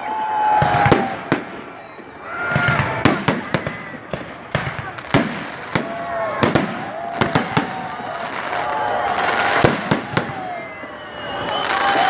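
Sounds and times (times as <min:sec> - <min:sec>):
fireworks crackle: 0:00.1 - 0:12.0.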